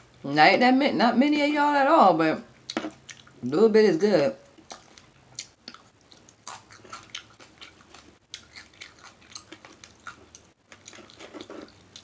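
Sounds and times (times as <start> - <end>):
person chewing and smacking lips: 2.6 - 3.4, 4.5 - 12.0.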